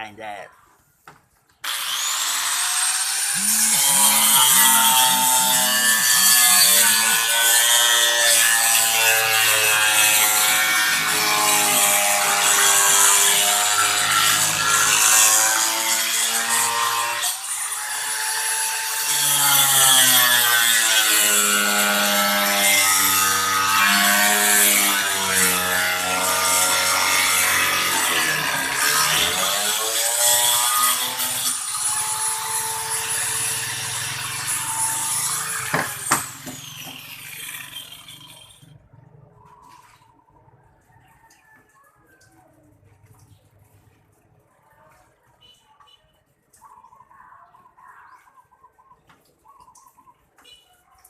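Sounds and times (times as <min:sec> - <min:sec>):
electric grinder motor whine: 0:01.6 - 0:38.6.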